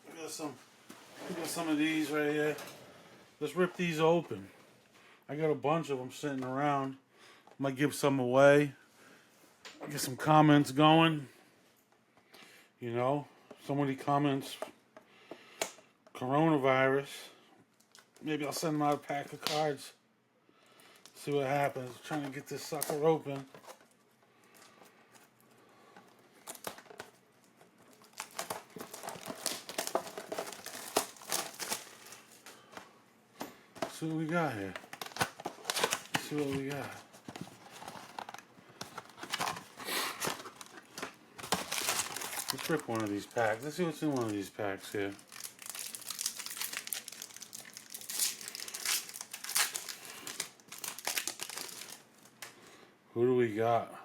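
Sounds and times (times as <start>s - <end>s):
card packaging crinkling: 20.9s - 32.8s, 33.8s - 52.5s.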